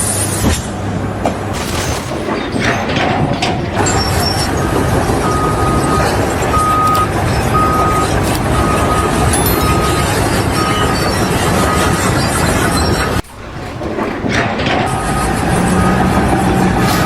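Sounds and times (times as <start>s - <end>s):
vehicle engine rumbling: 0.0s - 17.0s
reversing alarm beeping: 3.6s - 17.0s.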